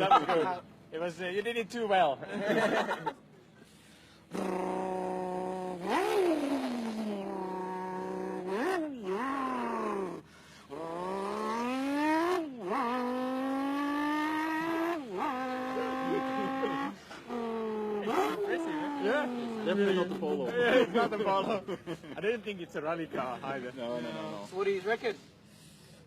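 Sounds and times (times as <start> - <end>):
man imitating car engine revving: 4.3 - 20.6.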